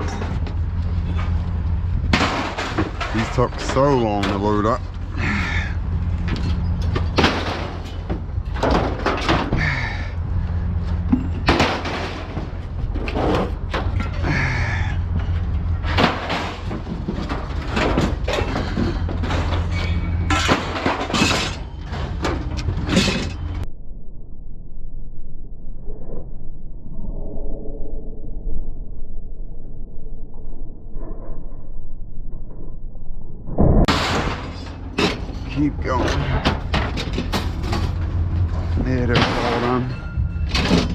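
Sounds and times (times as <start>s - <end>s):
steel panels clanging: 0.0s - 9.9s, 11.0s - 23.6s, 33.9s - 40.9s
steady low hum: 0.0s - 40.9s.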